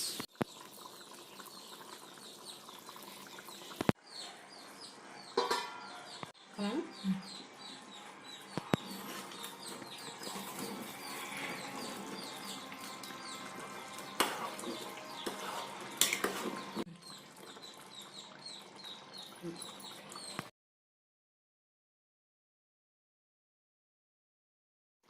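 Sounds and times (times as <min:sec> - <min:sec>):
metal utensil clinking on pot: 0:05.4 - 0:05.9, 0:14.1 - 0:16.8
stirring noise: 0:08.4 - 0:20.5.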